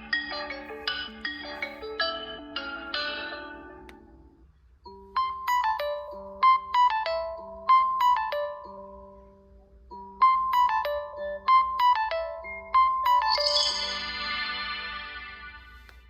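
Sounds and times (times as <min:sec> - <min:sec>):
phone ringtone melody: 0:00.0 - 0:03.9, 0:04.9 - 0:15.9.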